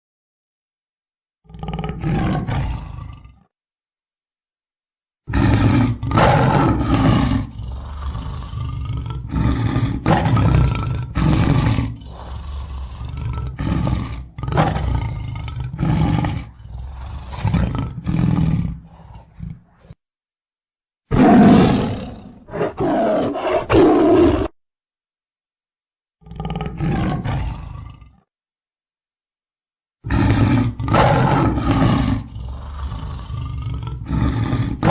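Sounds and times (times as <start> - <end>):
tiger roaring: 1.5 - 3.5, 5.3 - 20.0, 21.1 - 24.6, 26.2 - 28.3, 30.0 - 34.9.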